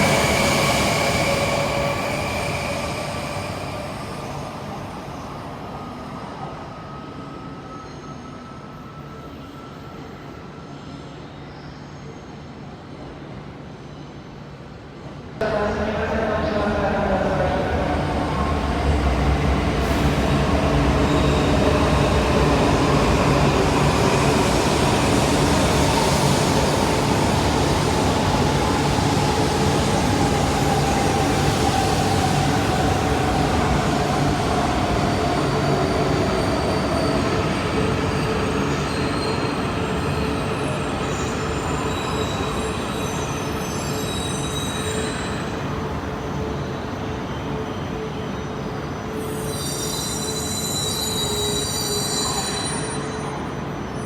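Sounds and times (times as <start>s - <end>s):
high brake squeals: 35.3s - 45.6s, 47.2s - 54.0s.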